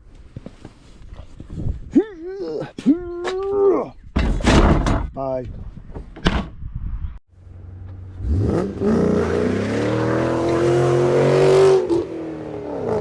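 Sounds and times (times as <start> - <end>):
engine revving: 8.1 - 13.0.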